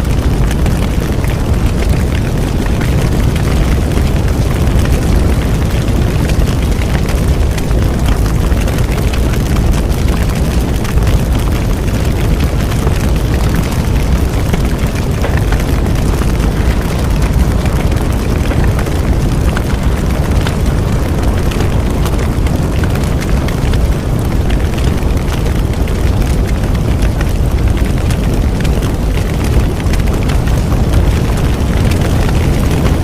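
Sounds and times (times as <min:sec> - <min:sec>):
burning wood crackling: 0:00.0 - 0:33.0
flames rumbling: 0:00.0 - 0:33.0.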